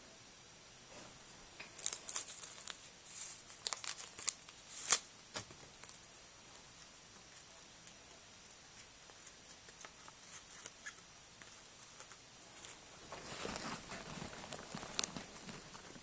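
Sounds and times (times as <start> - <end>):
packaging torn and crinkled: 1.8 - 5.1, 13.4 - 16.0.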